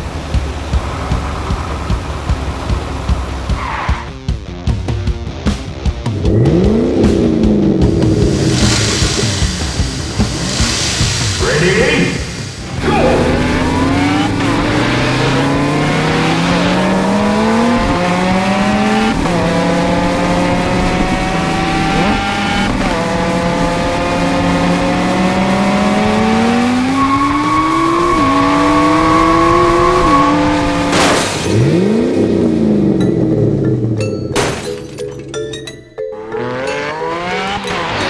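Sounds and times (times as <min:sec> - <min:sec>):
racing car engines revving: 0:00.0 - 0:04.8, 0:05.5 - 0:34.1, 0:36.2 - 0:38.0
loud rush of noise: 0:07.8 - 0:18.4
high steady squeal: 0:07.9 - 0:17.6, 0:26.9 - 0:30.8.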